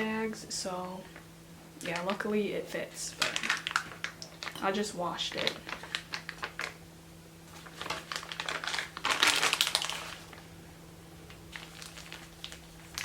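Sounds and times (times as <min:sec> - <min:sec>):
faint steady hum: 0:00.0 - 0:13.0
plastic bag crinkling: 0:01.8 - 0:02.4, 0:03.1 - 0:06.8, 0:07.5 - 0:10.6, 0:11.2 - 0:13.0.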